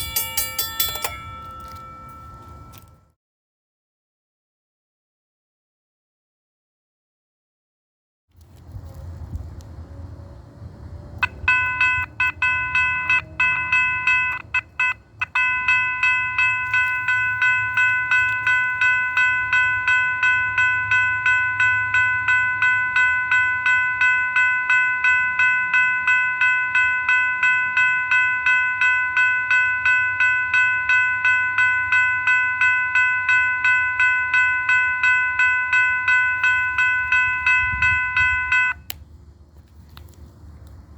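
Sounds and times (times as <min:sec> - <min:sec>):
railroad crossing bell ringing: 0:00.0 - 0:03.2, 0:11.2 - 0:38.9.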